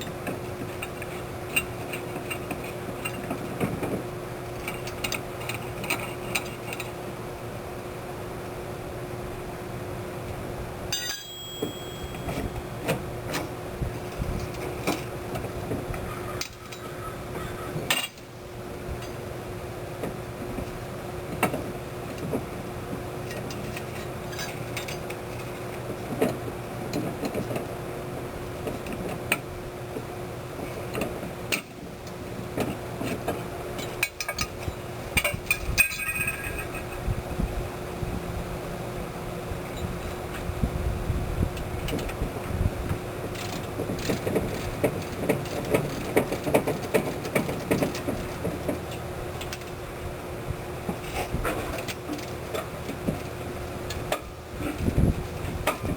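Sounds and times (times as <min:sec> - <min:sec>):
steady low hum: 0:00.0 - 0:55.9
metallic clinks of tools: 0:10.9 - 0:12.7.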